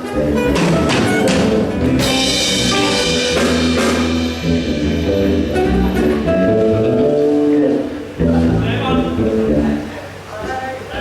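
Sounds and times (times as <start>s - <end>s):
live band playing: 0.0s - 10.3s
sharp cymbal crash: 1.9s - 6.7s.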